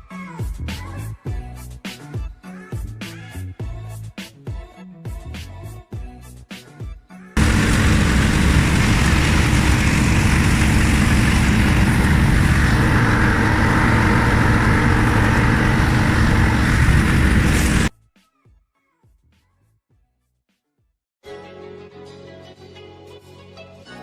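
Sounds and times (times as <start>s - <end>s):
heavy farm machinery engine rumble: 7.4s - 17.9s.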